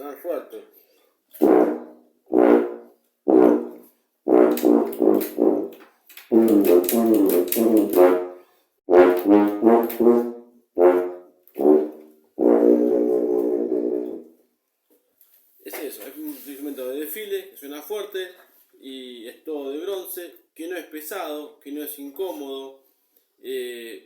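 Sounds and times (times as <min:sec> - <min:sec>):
tuba playing notes: 0:01.4 - 0:14.4.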